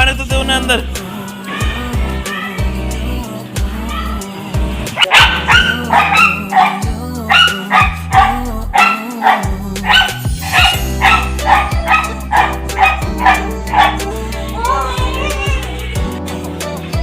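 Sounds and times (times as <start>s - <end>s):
background music with bass: 0.0s - 17.0s
dog barking excitedly: 5.0s - 15.7s.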